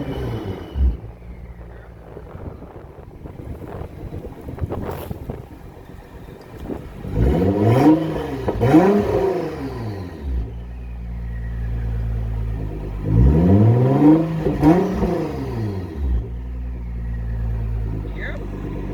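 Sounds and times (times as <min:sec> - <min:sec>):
car engine revving and idling: 0:00.0 - 0:18.9.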